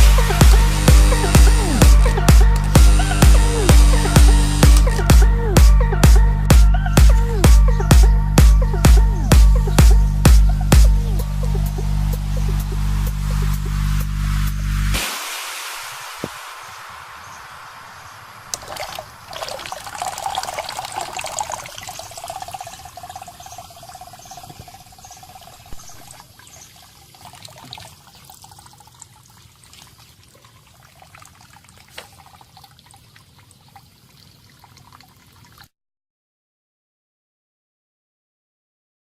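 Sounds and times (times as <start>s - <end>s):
water trickling and splashing: 15.0s - 35.7s.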